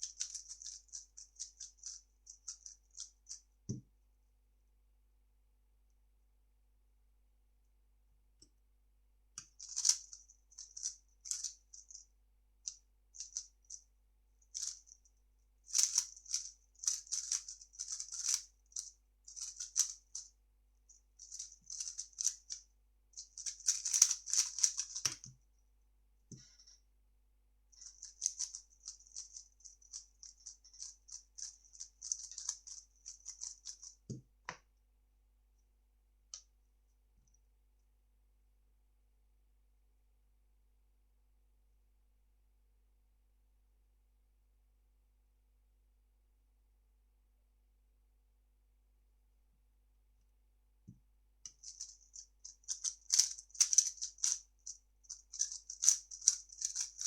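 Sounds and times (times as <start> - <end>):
puzzle cube plastic clicking: 0.0 - 2.0, 9.4 - 10.1, 15.7 - 18.4, 19.4 - 20.0, 23.4 - 25.3, 28.1 - 29.4, 51.5 - 54.4, 55.1 - 57.0.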